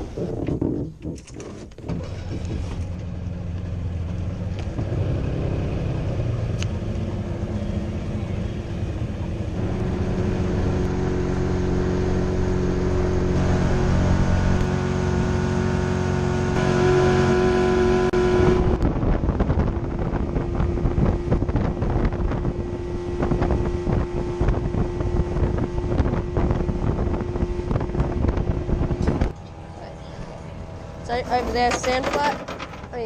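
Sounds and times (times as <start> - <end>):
engine running: 1.9 - 33.0
wind buffeting microphone: 18.1 - 32.2.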